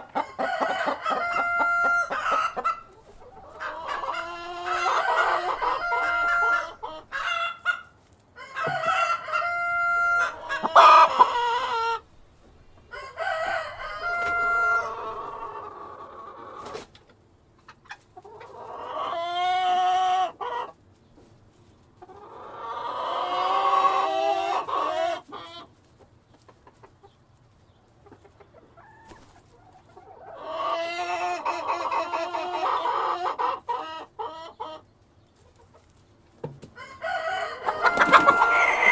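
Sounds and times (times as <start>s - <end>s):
hens clucking: 0.0s - 38.9s
rooster crowing: 0.2s - 2.7s, 4.6s - 6.8s, 8.4s - 12.0s, 12.9s - 15.5s, 36.8s - 38.9s.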